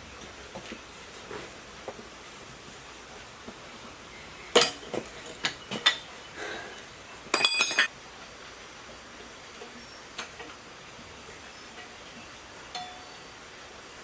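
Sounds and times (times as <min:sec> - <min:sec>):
metal objects clinking: 0:07.3 - 0:07.9
ringing metallic clatter: 0:07.3 - 0:07.9.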